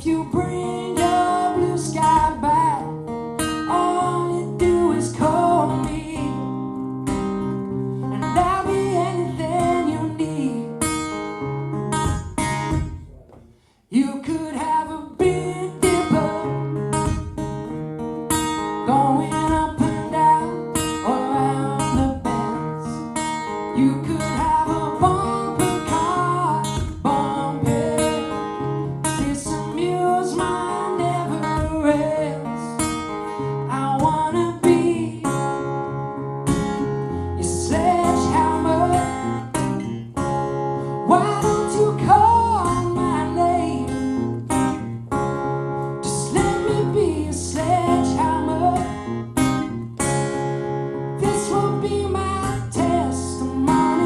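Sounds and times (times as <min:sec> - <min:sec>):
person singing: 0:00.0 - 0:03.0, 0:03.6 - 0:06.6, 0:08.1 - 0:10.8, 0:13.9 - 0:16.8, 0:18.8 - 0:23.0, 0:23.7 - 0:32.8, 0:33.6 - 0:35.5, 0:37.3 - 0:39.6, 0:41.0 - 0:44.0, 0:46.0 - 0:49.1, 0:51.2 - 0:54.0
strummed acoustic guitar: 0:00.0 - 0:54.0.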